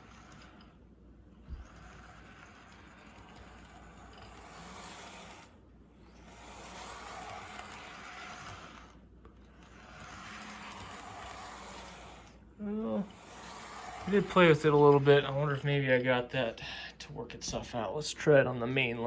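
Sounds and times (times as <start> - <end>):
small motor whirring: 0.0 - 15.7
model train wheels rolling: 0.0 - 16.4.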